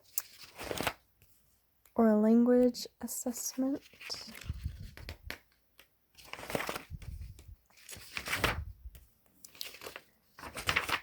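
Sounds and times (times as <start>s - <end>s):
pages turning swishes: 0.0s - 1.3s, 3.8s - 5.5s, 6.2s - 11.0s
paper pages rustling: 0.0s - 1.4s, 3.7s - 11.0s.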